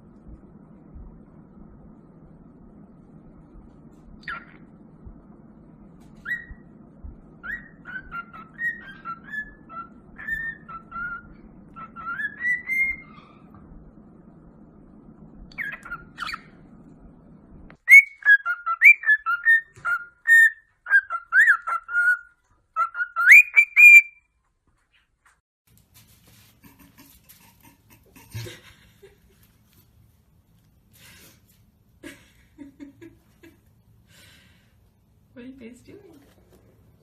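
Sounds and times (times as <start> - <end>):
low hum: 0.0 - 20.1
high chirping calls: 7.4 - 13.6.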